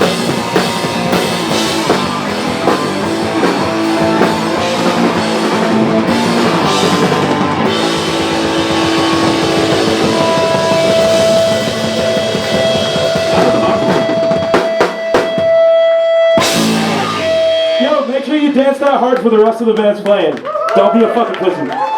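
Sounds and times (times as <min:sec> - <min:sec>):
drum kit: 0:00.0 - 0:15.8, 0:16.4 - 0:19.7
electric guitar: 0:00.0 - 0:18.1
rock band playing loud: 0:00.0 - 0:19.6
high held note: 0:03.1 - 0:18.6.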